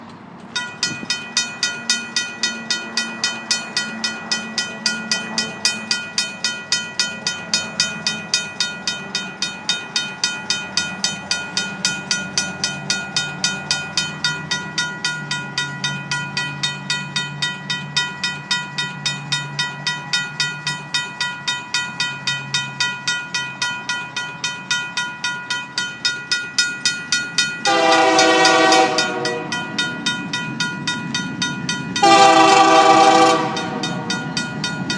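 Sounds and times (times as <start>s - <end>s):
crossing bell ringing rapidly: 0.5s - 34.9s
locomotive horn: 27.6s - 29.7s, 32.0s - 34.1s.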